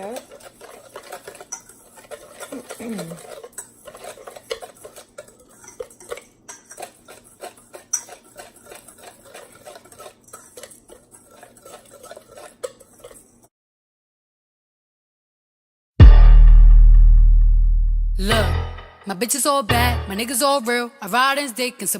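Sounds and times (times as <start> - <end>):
spoon clicking and scraping bowl: 0.0 - 13.5.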